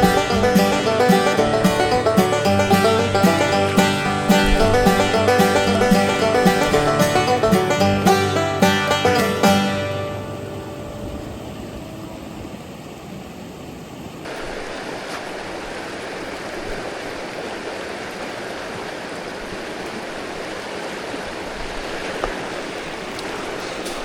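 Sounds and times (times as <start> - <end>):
river rushing over rocks: 0.0 - 8.6, 13.7 - 24.0.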